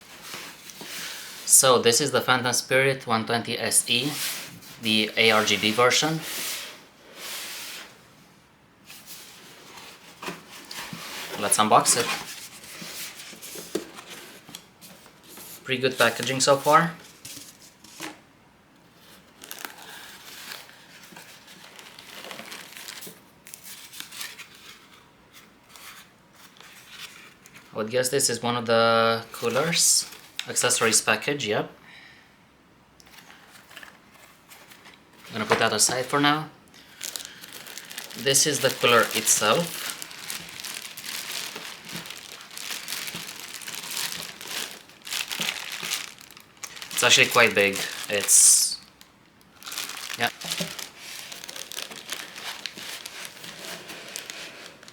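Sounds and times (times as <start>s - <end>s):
packaging crinkling and rustling: 8.9s - 18.2s, 19.0s - 25.0s, 33.1s - 36.2s, 36.8s - 54.9s.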